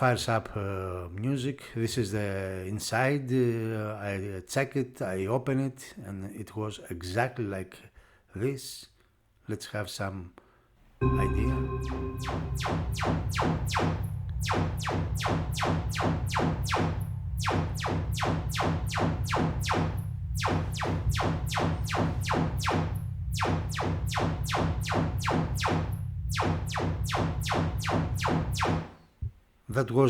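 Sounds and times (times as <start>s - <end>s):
steady low drone: 11.0s - 14.8s.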